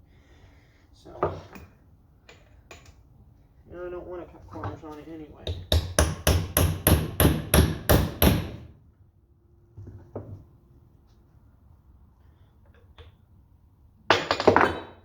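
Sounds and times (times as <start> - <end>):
hammer striking metal: 5.5 - 8.6.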